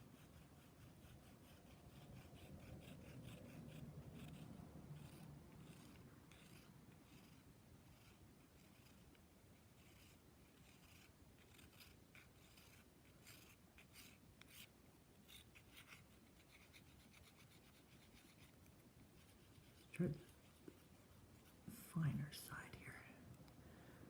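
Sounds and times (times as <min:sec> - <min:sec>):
nail file scratching beak: 0:00.1 - 0:09.2, 0:09.8 - 0:21.5.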